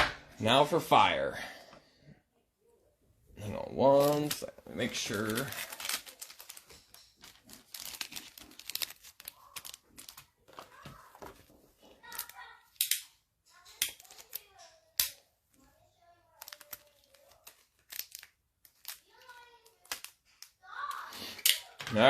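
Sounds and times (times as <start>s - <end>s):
plastic packaging crinkling: 3.5s - 12.4s, 16.3s - 20.2s
cards clicking and snapping: 5.1s - 11.4s, 12.1s - 15.2s, 16.4s - 22.0s.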